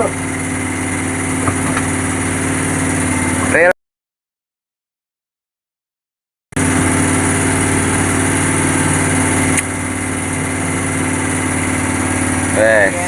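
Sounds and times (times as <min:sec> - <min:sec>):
boat engine idling: 0:00.0 - 0:03.7, 0:06.6 - 0:13.0.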